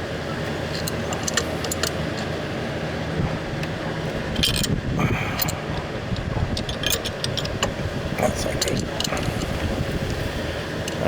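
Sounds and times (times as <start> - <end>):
steady low hum: 0.0 - 11.0
metal hand tools clinking: 6.6 - 7.7.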